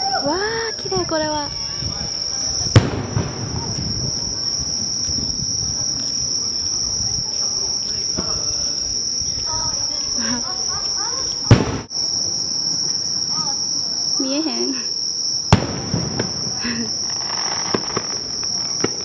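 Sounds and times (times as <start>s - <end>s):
firework bangs: 0.0s - 13.6s, 15.5s - 19.0s
insects chirring: 0.0s - 19.0s
rumble after explosion: 1.0s - 7.3s, 15.5s - 19.0s.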